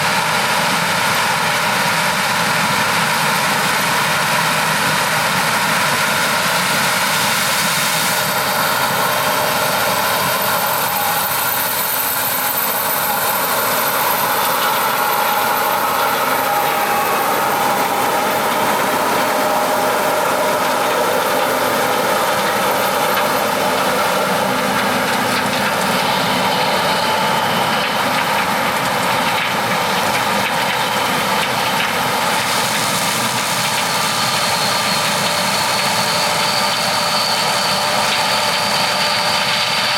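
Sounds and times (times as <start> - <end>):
diesel engine hum: 0.0 - 39.9
steady whining tones: 3.7 - 39.9.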